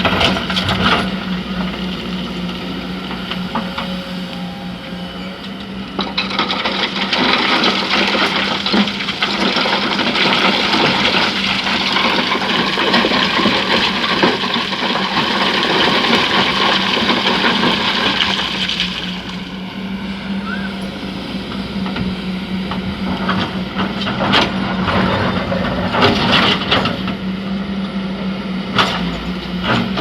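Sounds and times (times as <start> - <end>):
diesel engine humming: 0.0 - 30.0
sand and stones pouring: 6.4 - 19.6.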